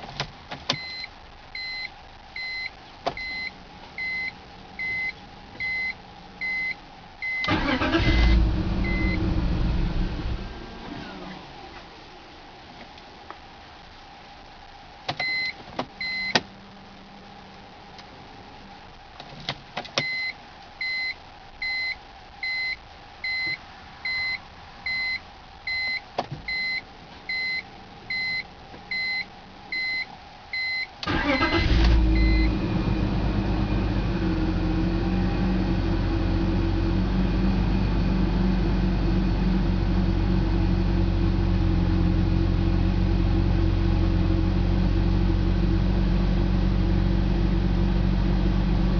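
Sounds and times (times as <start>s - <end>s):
car warning chime beeping: 0.8s - 9.2s, 15.2s - 16.4s, 20.0s - 32.6s
car engine starting and idling: 4.8s - 11.8s, 30.6s - 48.9s.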